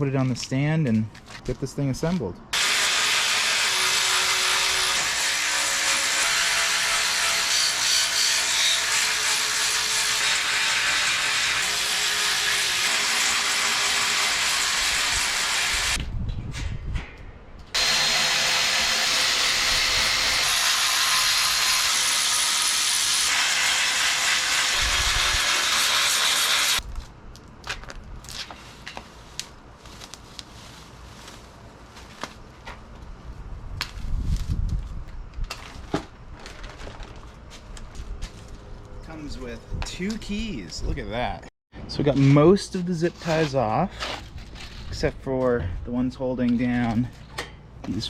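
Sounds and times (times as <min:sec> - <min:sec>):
power tool running: 0:02.6 - 0:16.0, 0:17.8 - 0:26.8.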